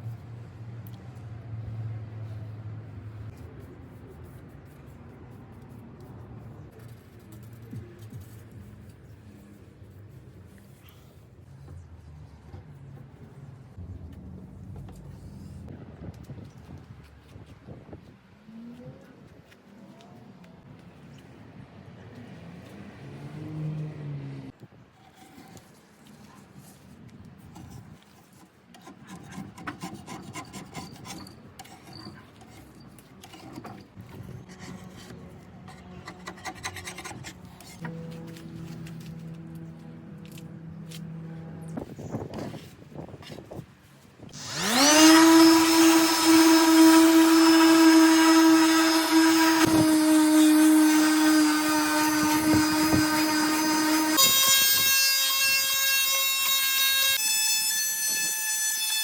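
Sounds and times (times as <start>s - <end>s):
wood being sanded by hand: 28.8s - 32.2s, 44.4s - 57.2s
electric power tool motor: 44.4s - 59.0s.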